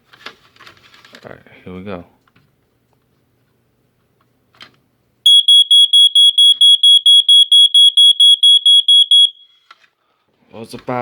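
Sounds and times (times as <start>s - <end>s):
smoke alarm beeping: 5.3s - 9.6s.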